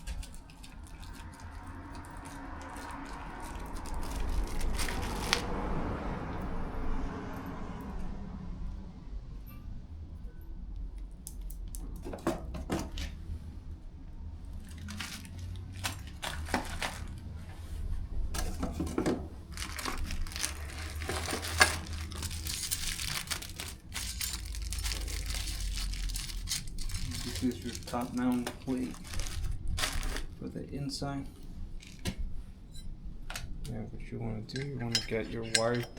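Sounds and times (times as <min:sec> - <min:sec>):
plastic packaging crinkling: 0:00.0 - 0:05.5, 0:14.5 - 0:17.4, 0:19.4 - 0:30.4.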